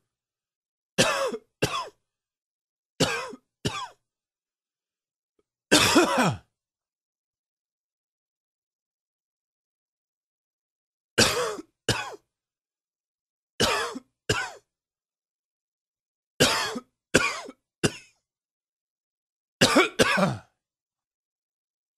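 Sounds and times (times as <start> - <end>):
man coughing: 1.0 - 2.0, 3.0 - 4.0, 5.7 - 6.5, 11.2 - 12.2, 16.4 - 18.1, 19.6 - 20.6.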